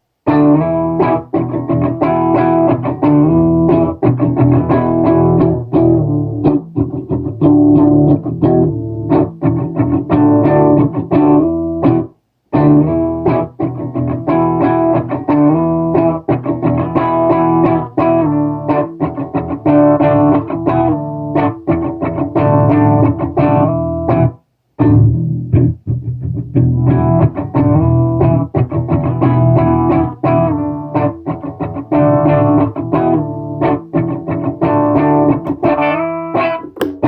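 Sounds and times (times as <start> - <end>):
electric guitar notes and chords: 0.3 - 37.0.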